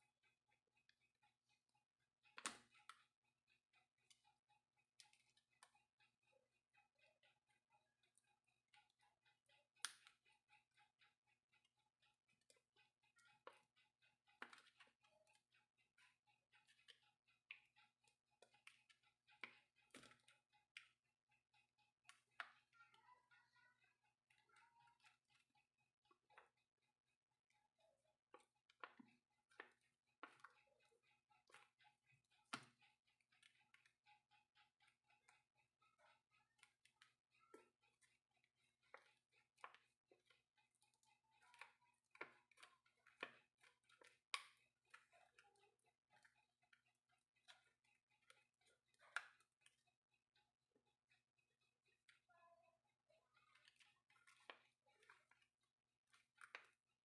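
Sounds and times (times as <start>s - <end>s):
faint small clicks and taps: 2.2s - 5.8s, 8.0s - 21.0s, 27.5s - 35.4s, 36.0s - 50.4s, 53.4s - 57.0s.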